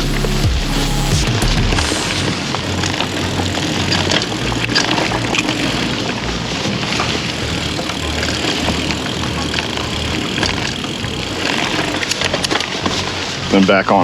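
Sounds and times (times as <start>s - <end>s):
bike tyres rolling on dirt: 1.9s - 14.0s
bike clicks and rattles: 2.9s - 14.0s.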